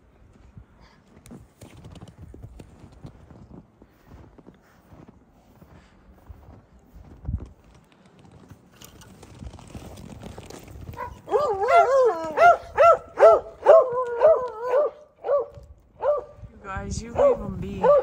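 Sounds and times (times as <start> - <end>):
dog yipping and whining: 11.0 - 16.2.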